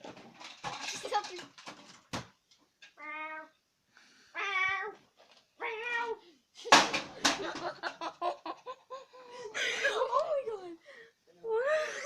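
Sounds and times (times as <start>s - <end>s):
cat meowing: 3.0s - 3.6s, 5.6s - 6.2s.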